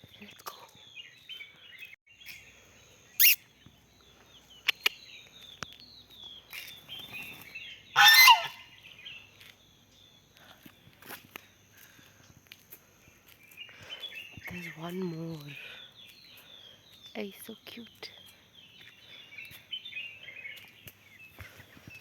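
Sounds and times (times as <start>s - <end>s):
small birds chirping: 0.0s - 12.0s, 13.0s - 22.0s
loud bird call: 8.0s - 8.7s.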